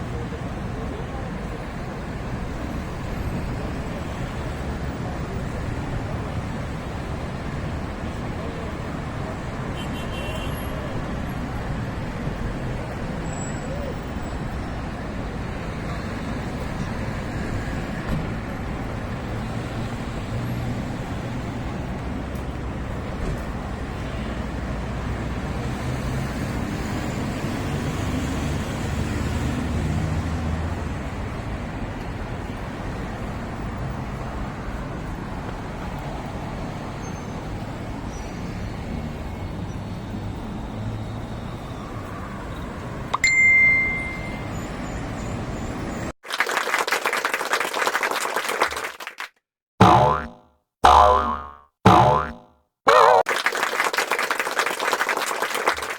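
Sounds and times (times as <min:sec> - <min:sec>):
road traffic rumble: 0:00.0 - 0:49.2
short high beep: 0:43.2 - 0:44.5
sudden sharp sound: 0:49.8 - 0:53.3.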